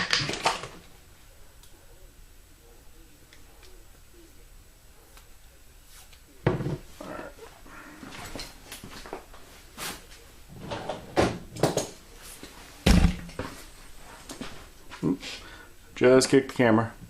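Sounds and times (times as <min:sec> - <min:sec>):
tools clattering on a workbench: 0:06.5 - 0:06.9
heavy deep thump: 0:12.9 - 0:13.3.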